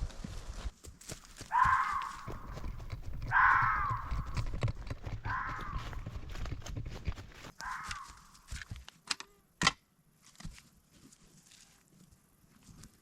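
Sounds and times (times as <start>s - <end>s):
animal calling: 1.5s - 4.5s, 5.1s - 6.0s, 7.5s - 8.4s.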